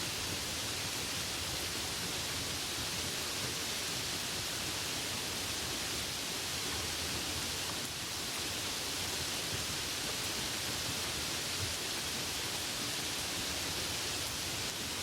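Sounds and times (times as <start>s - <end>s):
rain falling steadily: 0.0s - 15.0s.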